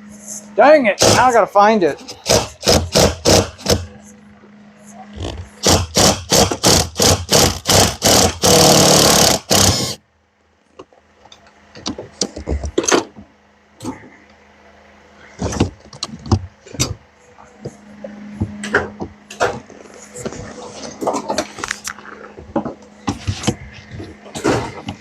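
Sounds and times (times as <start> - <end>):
impact wrench hammering: 1.0 - 1.3, 2.1 - 3.9, 5.6 - 10.0.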